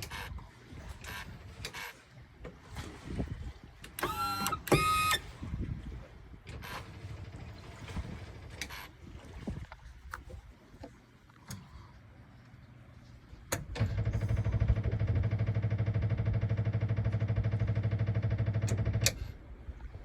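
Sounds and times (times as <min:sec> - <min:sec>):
electric starter cranking engine: 0:04.0 - 0:05.2.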